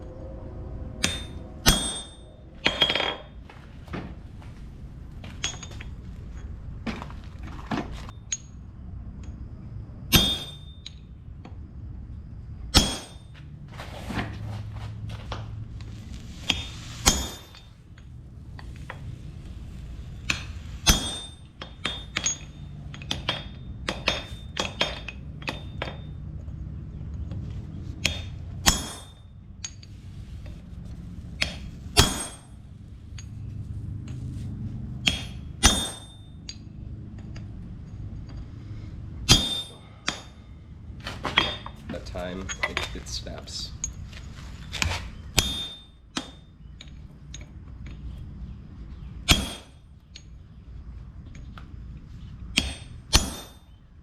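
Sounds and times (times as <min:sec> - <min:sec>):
steady low hum: 0:00.0 - 0:54.0
hammer striking metal on anvil: 0:01.0 - 0:03.3, 0:10.1 - 0:11.0, 0:12.8 - 0:13.2, 0:16.5 - 0:17.7, 0:20.3 - 0:26.0, 0:28.0 - 0:29.8, 0:31.4 - 0:32.6, 0:35.0 - 0:36.6, 0:39.2 - 0:40.4, 0:45.4 - 0:46.4, 0:49.3 - 0:49.8, 0:52.6 - 0:53.8.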